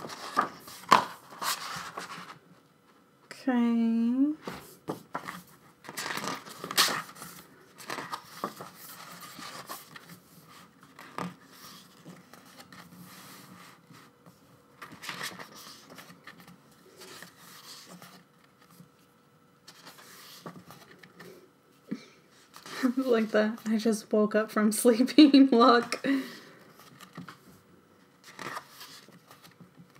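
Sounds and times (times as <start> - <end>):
paper pages rustling: 0.0 - 2.4, 4.4 - 21.3, 26.7 - 29.9.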